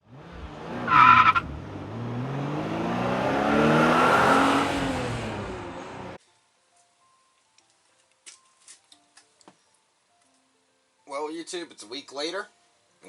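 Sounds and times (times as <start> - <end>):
car engine revving: 0.0 - 6.2
tyre squeal: 0.8 - 1.5.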